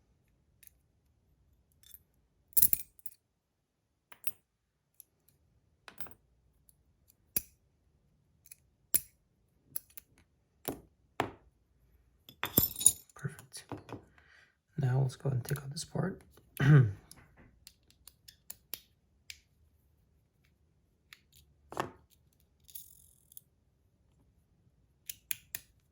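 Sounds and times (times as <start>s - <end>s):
small metal parts clicking: 22.3s - 23.4s.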